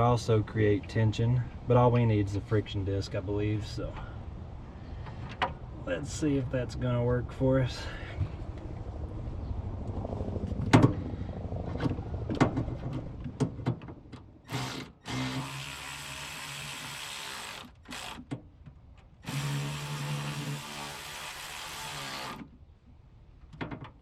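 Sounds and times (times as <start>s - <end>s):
power drill driving bolts: 14.4s - 18.4s, 19.2s - 22.5s.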